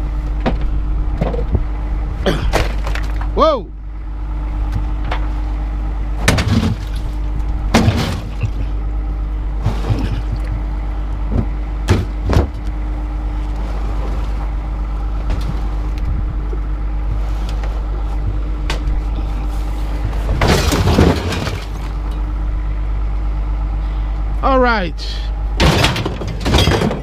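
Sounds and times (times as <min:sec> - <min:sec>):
vehicle engine running: 0:00.0 - 0:27.0
scrap metal clanking: 0:09.6 - 0:10.5, 0:19.0 - 0:22.2, 0:25.6 - 0:27.0.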